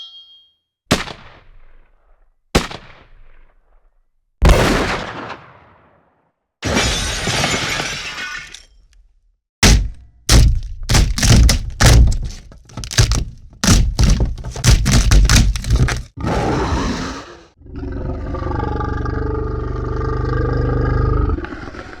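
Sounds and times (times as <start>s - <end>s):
heavy hits and thuds: 9.6s - 16.2s.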